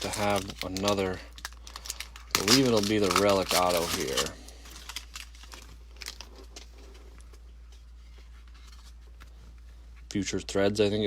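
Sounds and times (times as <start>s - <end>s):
foil wrapper crinkling: 0.0s - 7.4s.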